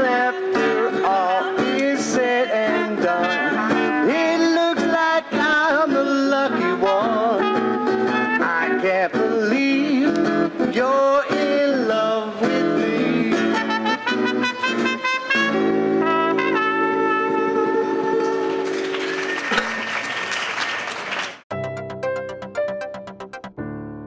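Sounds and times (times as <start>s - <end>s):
live music held chord: 12.5s - 18.9s.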